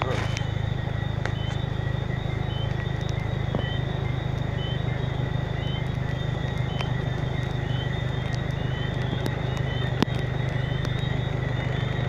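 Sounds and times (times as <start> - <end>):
low steady rumble: 0.0 - 12.0
rain falling: 0.0 - 12.0
drip ticks: 2.5 - 12.0.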